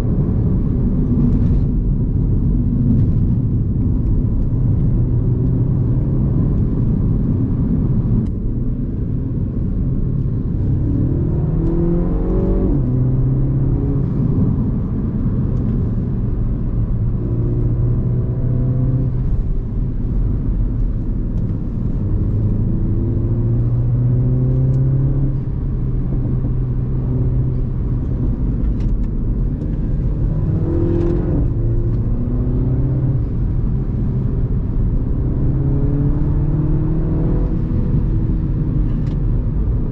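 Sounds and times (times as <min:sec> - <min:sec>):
car engine revving: 0:00.0 - 0:39.9
gear shift: 0:23.6 - 0:35.1.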